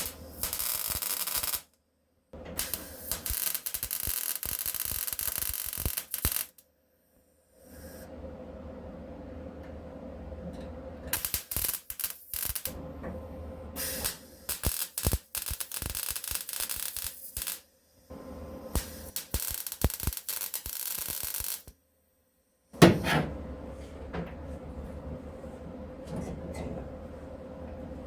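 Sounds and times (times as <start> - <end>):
welder crackling: 0.0 - 1.7, 2.6 - 6.6, 11.1 - 12.8, 13.8 - 17.6, 18.7 - 21.7.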